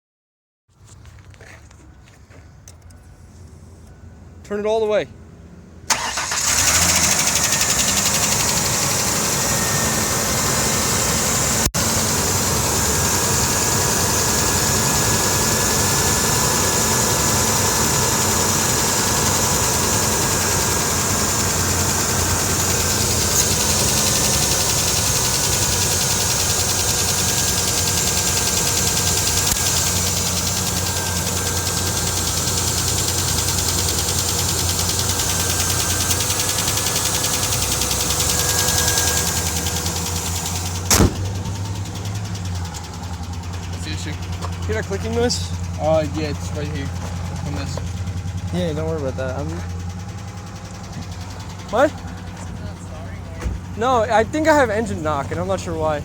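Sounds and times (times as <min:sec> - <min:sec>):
clicking in engine: 0:02.6 - 0:04.0, 0:05.8 - 0:08.8, 0:18.6 - 0:48.5, 0:49.6 - 0:52.6
car engine starting and idling: 0:05.2 - 0:56.0.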